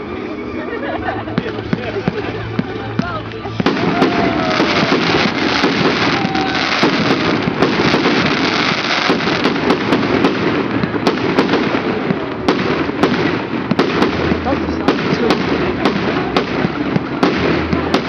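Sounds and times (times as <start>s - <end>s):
fireworks bangs and crackles: 1.0s - 18.0s.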